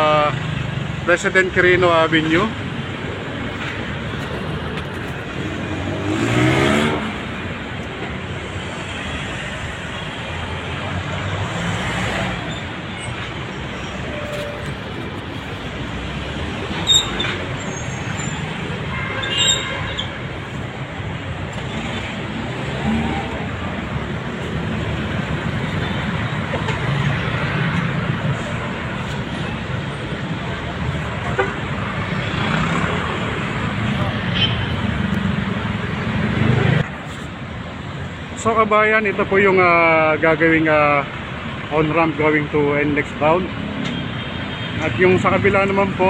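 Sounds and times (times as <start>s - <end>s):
road traffic din: 0.0s - 46.0s
vehicle passing close: 5.2s - 7.6s.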